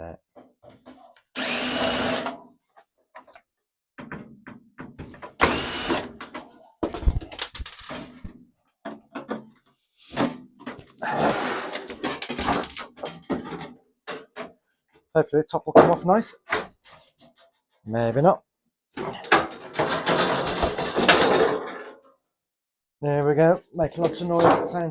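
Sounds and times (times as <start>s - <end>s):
power drill-driver running: 1.4s - 2.3s, 5.4s - 6.2s
metal parts knocking and clattering: 8.8s - 14.6s, 19.1s - 22.1s.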